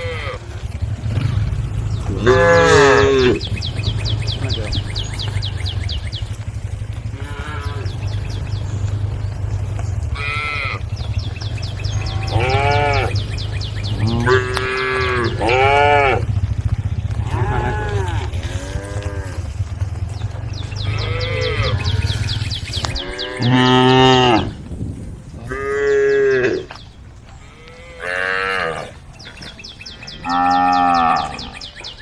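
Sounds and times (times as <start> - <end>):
steady low hum: 0.0 - 23.5
cows mooing: 0.0 - 24.6, 25.4 - 26.8, 27.4 - 29.0, 30.1 - 31.8.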